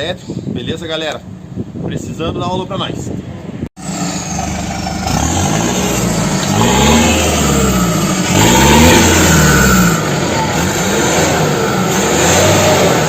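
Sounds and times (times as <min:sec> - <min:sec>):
diesel engine revving: 0:03.8 - 0:13.0.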